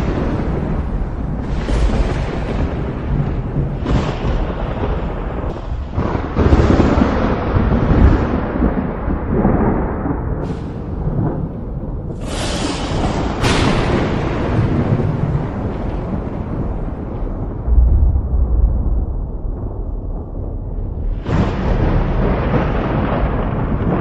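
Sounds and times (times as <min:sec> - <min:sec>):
sharp thunder cracks: 0:00.0 - 0:24.0
thunder rumbling: 0:00.0 - 0:24.0.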